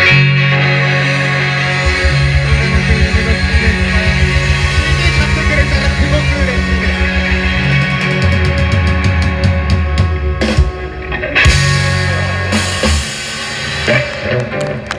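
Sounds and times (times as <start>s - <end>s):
loud ringing guitar chord: 0.0s - 10.0s
live rock band playing: 0.0s - 14.9s
rapid drum hits: 1.7s - 10.8s.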